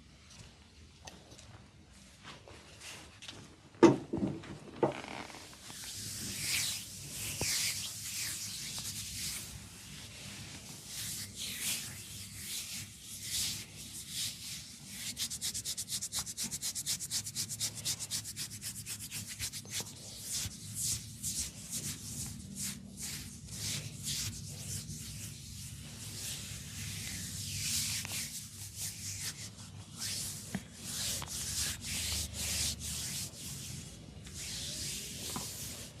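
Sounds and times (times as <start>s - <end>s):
hands rubbing scalp and hair: 5.5s - 36.0s.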